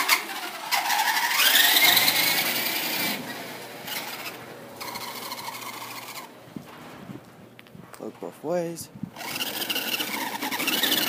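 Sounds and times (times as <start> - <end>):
toy car motor whining: 0.0 - 6.3, 9.2 - 11.0.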